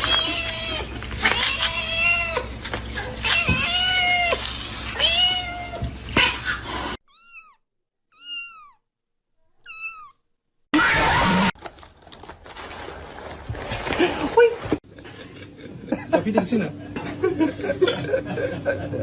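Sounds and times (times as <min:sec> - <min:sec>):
cat meowing: 0:07.1 - 0:08.8, 0:09.6 - 0:10.2.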